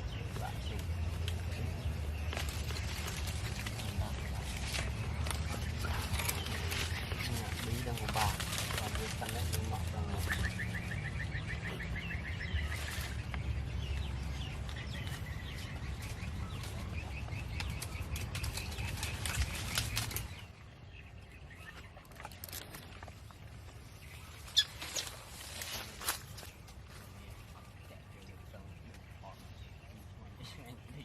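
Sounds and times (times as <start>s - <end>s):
low rumbling noise: 0.0s - 30.4s
bird chirps: 10.0s - 31.0s.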